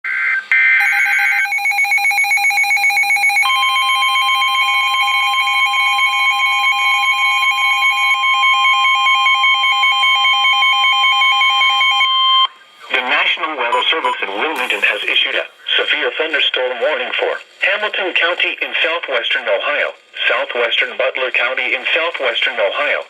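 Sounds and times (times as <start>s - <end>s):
electronic alarm beeping: 0.1s - 12.6s
steady warning tone: 0.8s - 15.8s.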